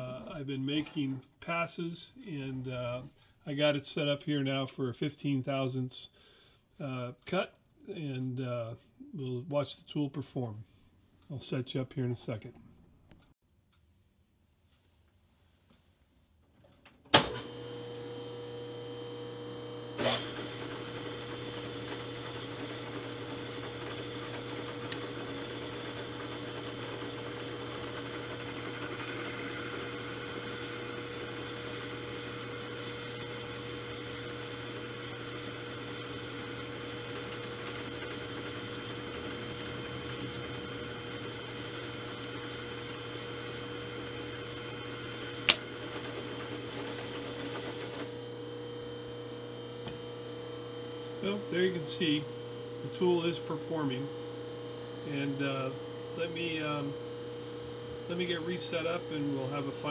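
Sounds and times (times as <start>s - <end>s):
milling machine humming: 17.3s - 59.9s.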